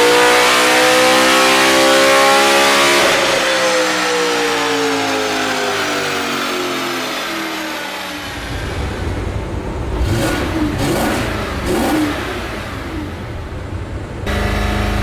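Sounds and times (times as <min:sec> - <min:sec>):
car engine exhaust note: 0:08.3 - 0:15.0.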